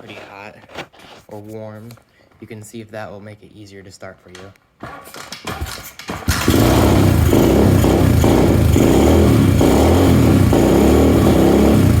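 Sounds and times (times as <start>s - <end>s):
dirt bike engine revving: 5.6s - 12.0s.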